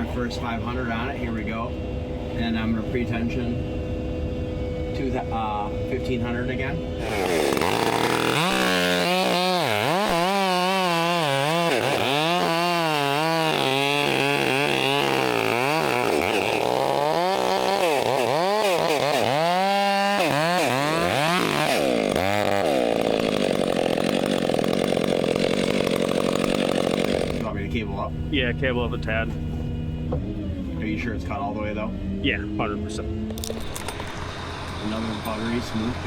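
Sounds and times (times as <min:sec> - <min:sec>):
chainsaw cutting wood: 0:07.0 - 0:27.6, 0:33.3 - 0:36.0.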